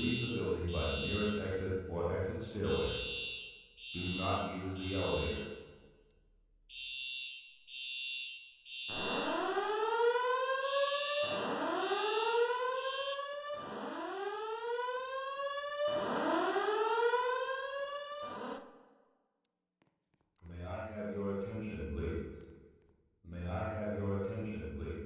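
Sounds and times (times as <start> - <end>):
high-pitched alarm beeps: 0.0 - 1.6, 2.6 - 5.8, 6.7 - 10.0
rising whoop alarm sweeps: 8.9 - 18.6.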